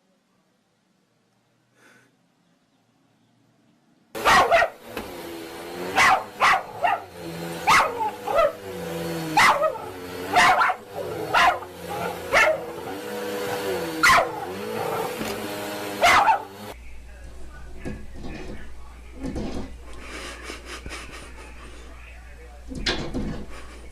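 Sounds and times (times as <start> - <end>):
dog barking: 4.2 - 4.8, 5.8 - 8.7, 9.3 - 15.2, 15.9 - 16.7
steady droning hum: 16.8 - 22.8.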